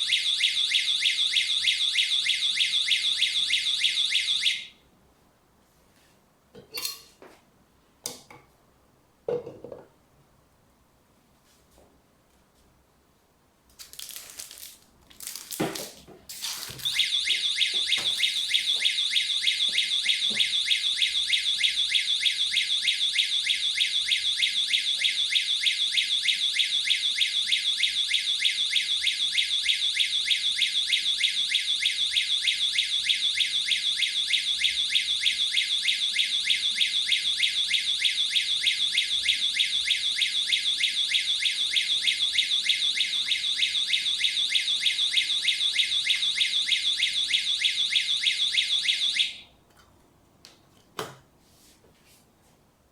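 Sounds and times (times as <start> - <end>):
pulsing high-pitched alarm siren: 0.0 - 4.7, 16.8 - 49.4.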